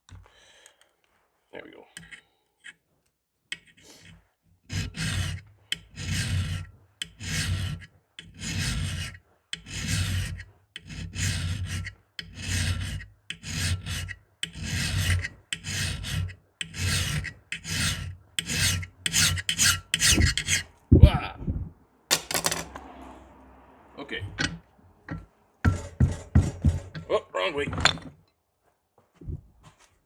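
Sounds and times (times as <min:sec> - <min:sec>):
hand file rasping on steel: 0:03.5 - 0:20.8.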